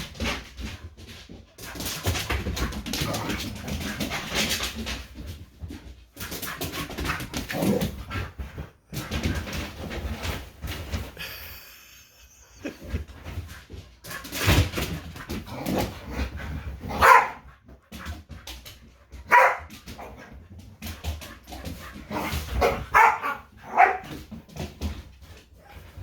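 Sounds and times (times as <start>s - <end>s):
dogs barking: 16.9s - 17.4s, 19.3s - 19.7s, 22.6s - 24.1s.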